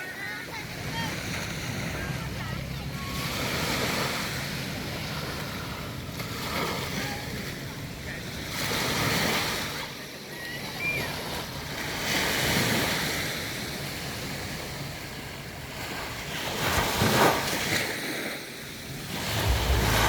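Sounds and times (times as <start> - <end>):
waves breaking on beach: 0.0 - 20.0
wind buffeting microphone: 19.2 - 20.0.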